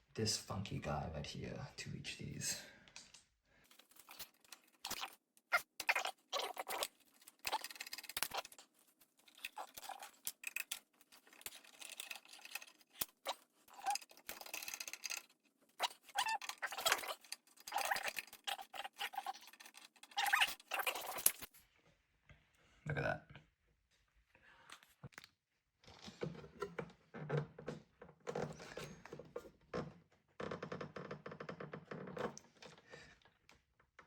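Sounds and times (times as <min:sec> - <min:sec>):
hand tool scraping and clicking: 0:06.7 - 0:21.5.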